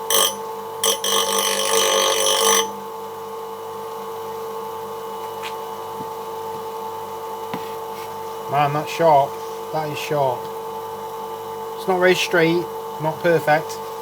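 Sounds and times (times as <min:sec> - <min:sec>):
metal grinding on wheel: 0:00.0 - 0:02.8
bench grinder motor humming: 0:00.0 - 0:02.9.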